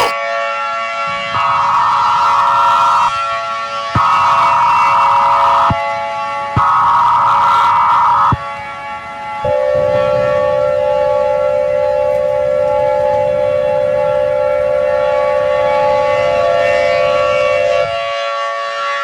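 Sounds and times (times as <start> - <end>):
steady siren tone: 0.0 - 19.0
high electronic alert tone: 9.5 - 17.9.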